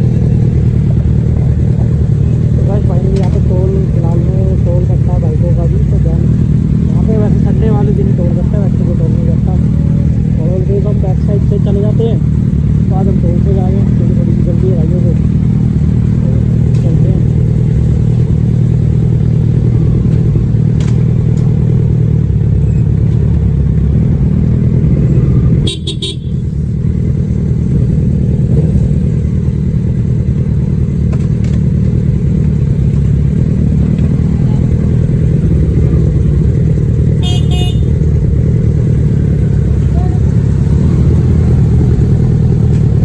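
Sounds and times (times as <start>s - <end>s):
motorcycle engine running: 0.0s - 43.0s
short horn beeps: 25.6s - 26.4s, 37.2s - 38.0s.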